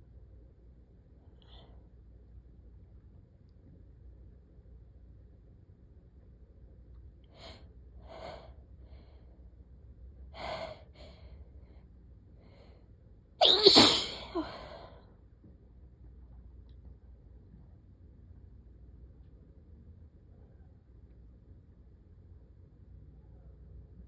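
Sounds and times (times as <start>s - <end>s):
person sneezing loudly: 13.4s - 14.8s.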